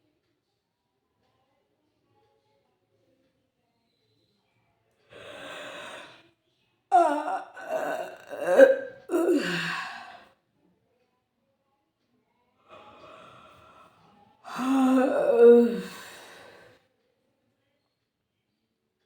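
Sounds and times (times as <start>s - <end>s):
person yawning: 5.2s - 6.2s, 6.9s - 10.2s, 12.7s - 13.7s, 14.5s - 16.7s.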